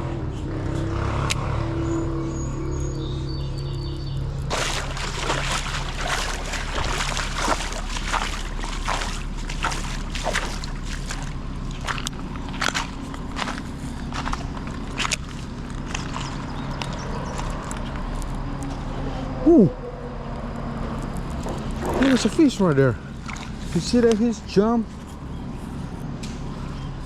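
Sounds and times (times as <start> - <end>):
footsteps sloshing through water: 4.4 - 18.9, 20.9 - 27.0.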